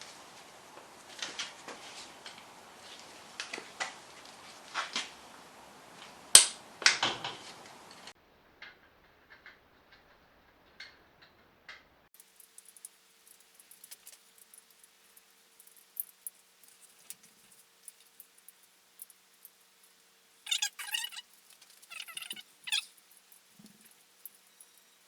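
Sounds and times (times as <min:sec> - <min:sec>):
background hiss: 0:00.0 - 0:25.0
faint ticks: 0:10.7 - 0:25.0.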